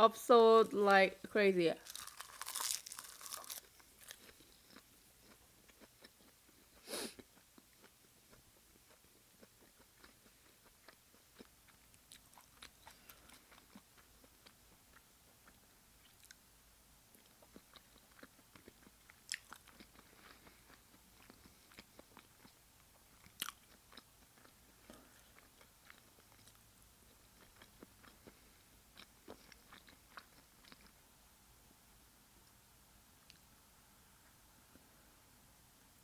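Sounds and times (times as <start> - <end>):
person chewing wet mouth sounds: 1.8 - 16.4, 17.2 - 31.0.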